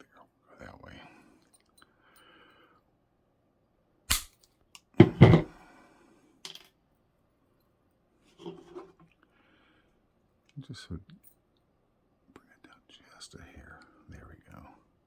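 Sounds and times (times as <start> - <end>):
wire clippers snipping: 4.1 - 4.4
loud knocks: 5.0 - 5.5.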